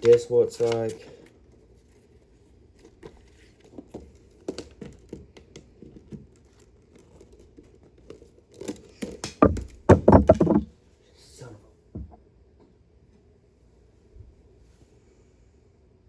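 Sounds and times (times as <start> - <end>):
plastic case knocks: 9.2 - 10.7.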